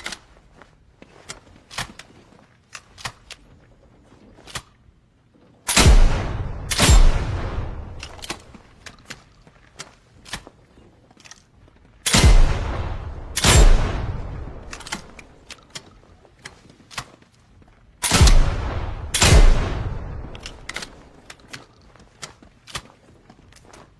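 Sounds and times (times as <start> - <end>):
shotgun shots echoing: 5.7 - 8.6, 12.1 - 15.5, 18.0 - 21.2.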